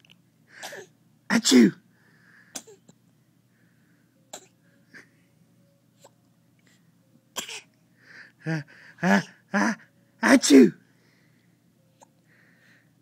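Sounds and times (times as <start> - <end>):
person sneezing: 0.6 - 1.8.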